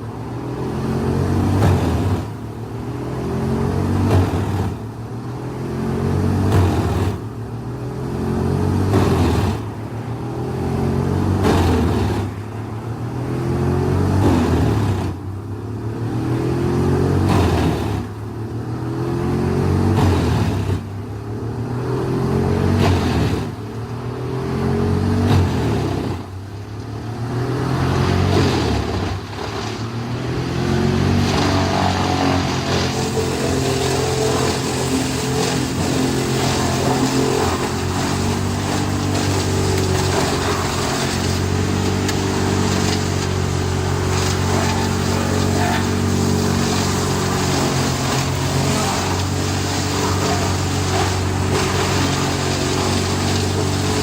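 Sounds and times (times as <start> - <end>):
wood chipper engine under load: 0.0 - 15.2, 16.2 - 54.0
wood being chipped: 31.2 - 54.0.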